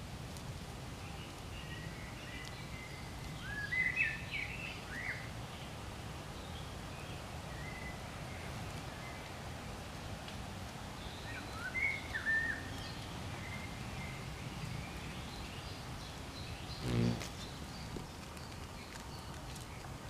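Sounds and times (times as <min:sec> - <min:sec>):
low outdoor background noise: 0:00.0 - 0:20.0
birds chirping: 0:11.0 - 0:19.9.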